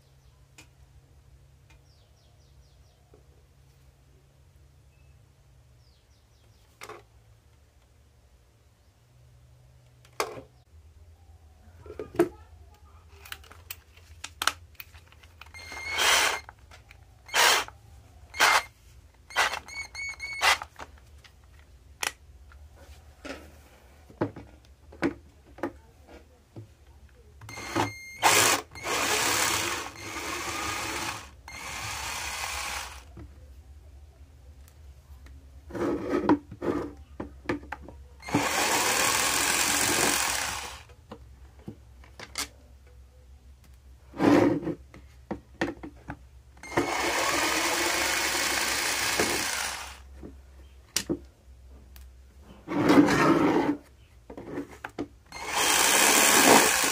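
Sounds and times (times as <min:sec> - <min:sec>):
cordless drill motor spinning: 0:15.4 - 0:16.5, 0:17.3 - 0:20.8, 0:27.4 - 0:33.1, 0:38.2 - 0:40.9, 0:46.6 - 0:50.0, 0:55.3 - 0:56.9.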